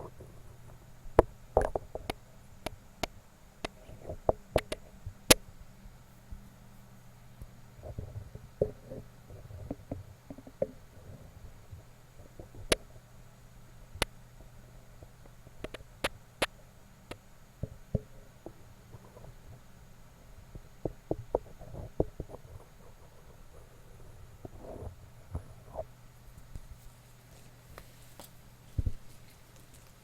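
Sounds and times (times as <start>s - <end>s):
faint low hum: 0.0s - 30.0s
small objects tapping and clicking: 1.2s - 4.9s
soft rustles: 20.6s - 30.0s.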